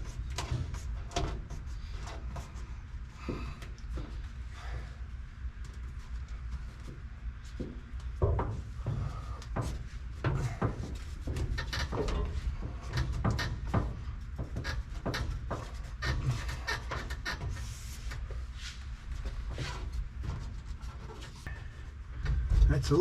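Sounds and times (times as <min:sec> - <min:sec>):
knocks taps and rubbing: 0:06.8 - 0:18.2.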